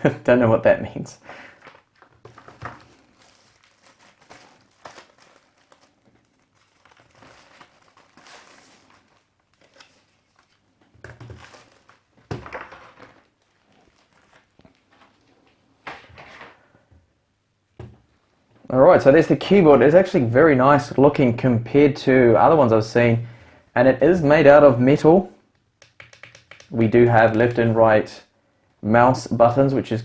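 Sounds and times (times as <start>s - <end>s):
packaging rustling and crinkling: 1.5s - 16.7s.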